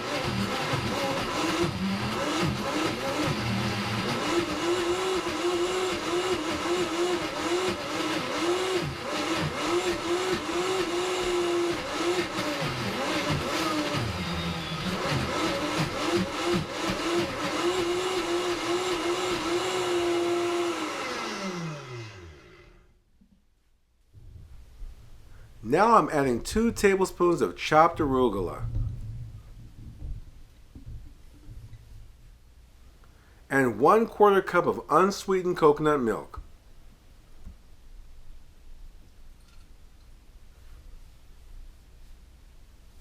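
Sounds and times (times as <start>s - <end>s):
blender motor running: 0.0s - 22.9s.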